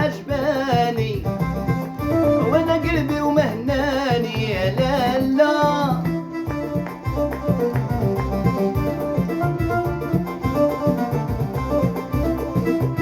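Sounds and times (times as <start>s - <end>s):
band playing instrumental music: 0.0s - 13.0s
hand drum rhythm: 0.0s - 13.0s
wavering lead melody: 1.3s - 13.0s.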